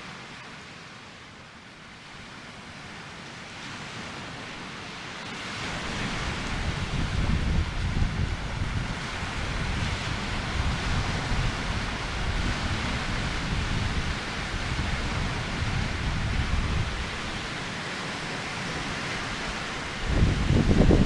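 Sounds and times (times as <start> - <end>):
wind buffeting microphone: 5.6 - 17.7, 18.5 - 21.0.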